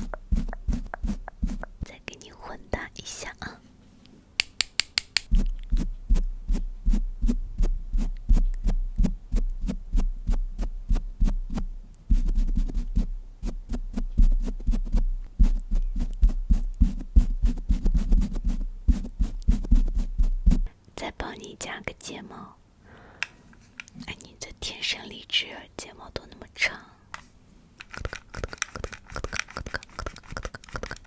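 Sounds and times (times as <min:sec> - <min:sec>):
soft patting on microphone: 0:00.0 - 0:01.9, 0:05.2 - 0:20.7.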